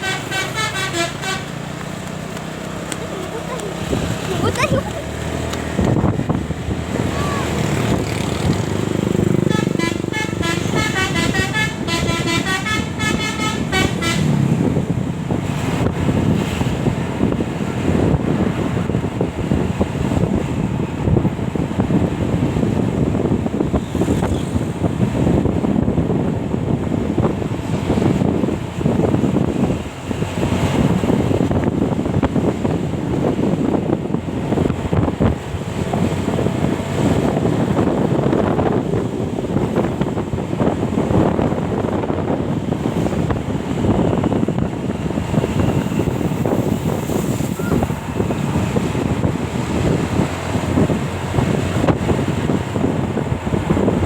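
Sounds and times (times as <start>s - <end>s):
musical bus horn: 0.0s - 1.7s, 9.3s - 14.8s
vehicle and road rumble: 0.0s - 54.0s
wind buffeting microphone: 0.0s - 54.0s.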